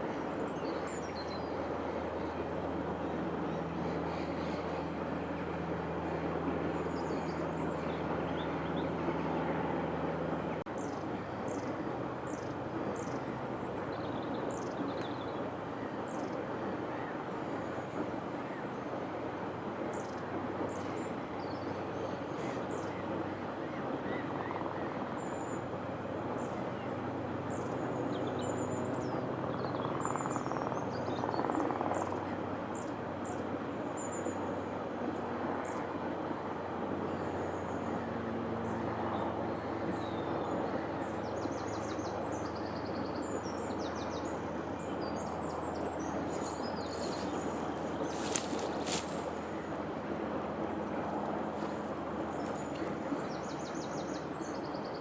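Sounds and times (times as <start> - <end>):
small birds chirping: 41.2 - 49.7
rushing background noise: 43.0 - 54.4.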